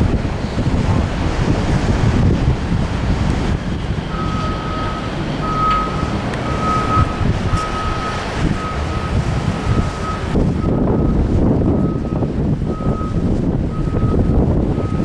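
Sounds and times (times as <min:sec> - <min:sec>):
low wind rumble: 0:00.0 - 0:15.0
reversing alarm beeping: 0:04.1 - 0:15.0.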